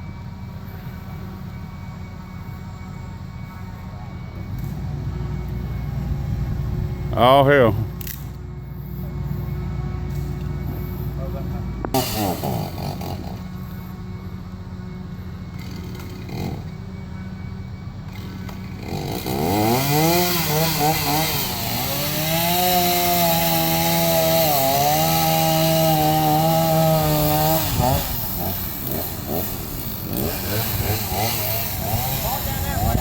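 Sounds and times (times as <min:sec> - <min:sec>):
chainsaw revving and cutting wood: 0:09.1 - 0:13.8, 0:15.5 - 0:17.0, 0:18.1 - 0:33.0.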